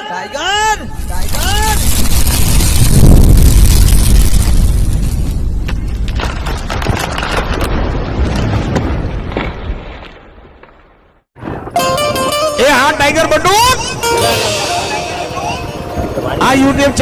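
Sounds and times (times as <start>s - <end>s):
explosion boom with crackling rumble: 0.8s - 11.7s.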